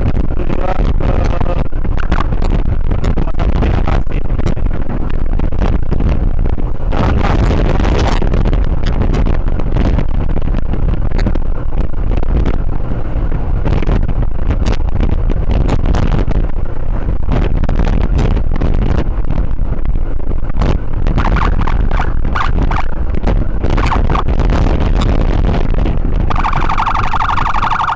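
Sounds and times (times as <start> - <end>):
motorcycle riding at speed: 0.0 - 27.9
wind buffeting microphone: 0.0 - 27.9.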